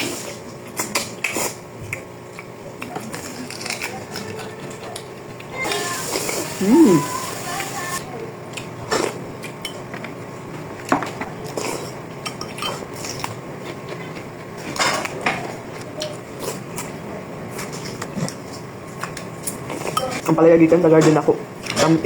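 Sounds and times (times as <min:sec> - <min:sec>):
cutlery clinking on dishes: 0:12.2 - 0:13.2.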